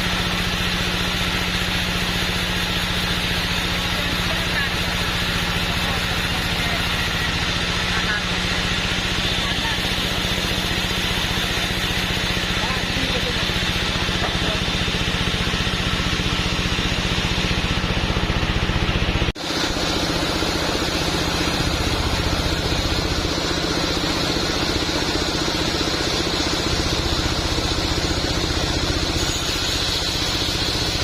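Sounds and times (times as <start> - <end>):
sawmill machinery running: 0.0 - 31.0.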